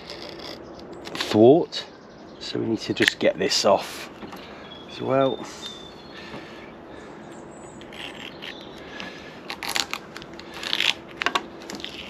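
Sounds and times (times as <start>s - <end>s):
covering scraping and crackling off wood: 7.8s - 12.0s.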